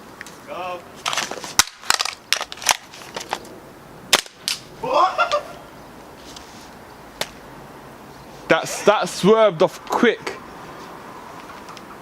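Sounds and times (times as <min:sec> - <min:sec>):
person shouting: 0:04.8 - 0:05.5.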